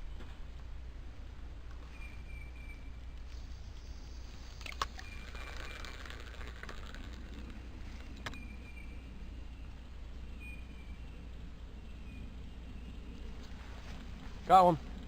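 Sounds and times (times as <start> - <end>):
low steady rumble: 0.0 - 15.0.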